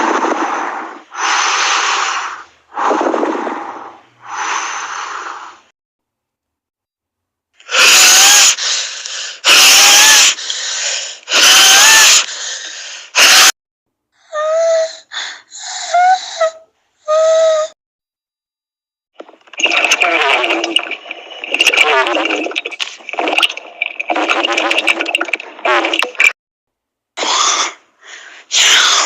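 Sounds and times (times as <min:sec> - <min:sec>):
noisy breaths: 0:00.0 - 0:05.7, 0:08.5 - 0:09.5, 0:10.3 - 0:11.3, 0:12.2 - 0:13.2.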